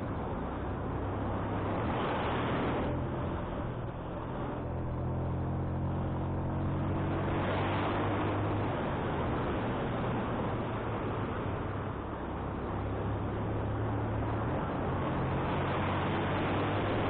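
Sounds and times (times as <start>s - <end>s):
wind noise on microphone: 6.3s - 17.0s.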